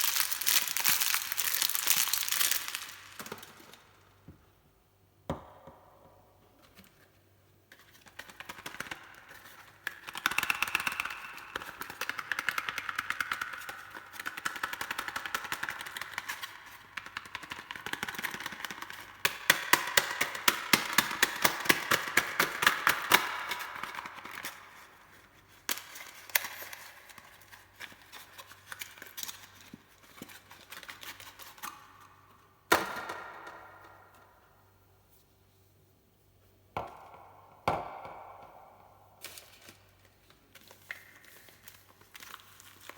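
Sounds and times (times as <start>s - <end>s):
wrapper crackling: 0.0s - 3.9s.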